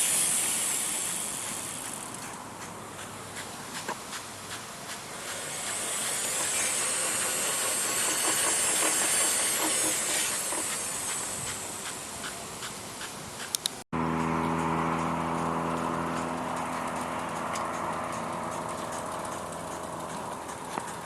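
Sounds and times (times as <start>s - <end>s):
electric motor humming: 5.2s - 11.8s
sharp clicks: 13.0s - 13.8s
vehicle passing by: 14.0s - 21.0s.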